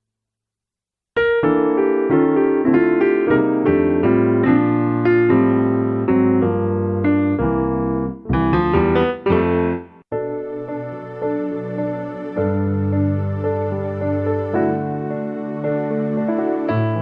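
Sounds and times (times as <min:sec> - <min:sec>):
keyboard piano chords: 0:01.2 - 0:17.0
held bass notes: 0:07.4 - 0:09.9.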